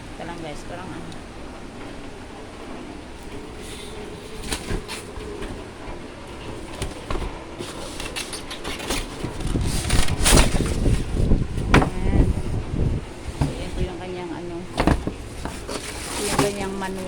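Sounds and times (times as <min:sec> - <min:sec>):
packaging clicks knocks and rustles: 0:03.2 - 0:12.4, 0:14.6 - 0:17.0.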